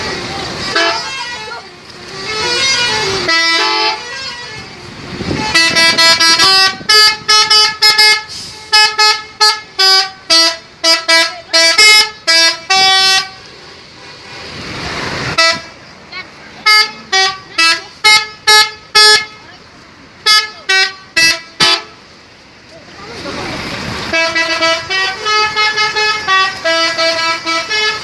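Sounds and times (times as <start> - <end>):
musical air horn toots: 0.6 - 14.7, 15.3 - 15.8, 20.2 - 22.0, 24.1 - 28.0.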